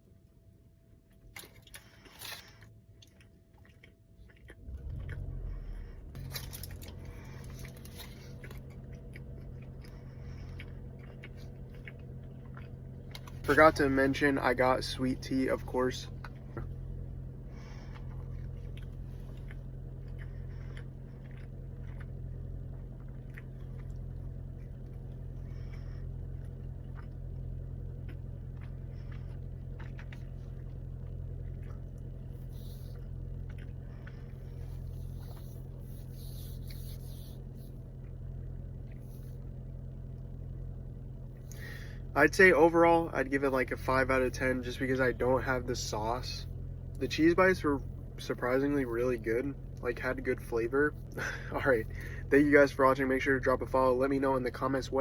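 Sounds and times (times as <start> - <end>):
person eating and chewing: 1.0 - 39.4
car cabin low hum: 4.2 - 55.0.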